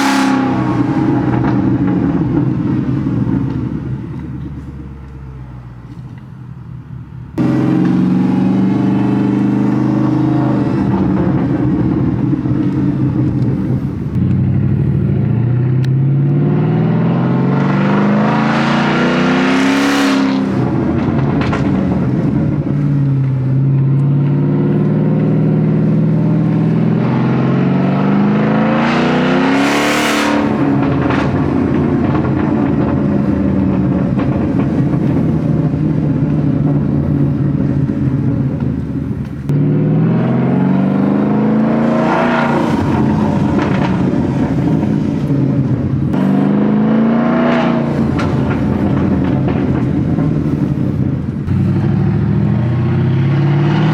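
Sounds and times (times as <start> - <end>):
car engine revving: 0.0 - 4.2, 7.4 - 53.9
exhaust pops: 20.5 - 24.1, 30.3 - 39.6, 42.0 - 46.3, 47.8 - 52.7.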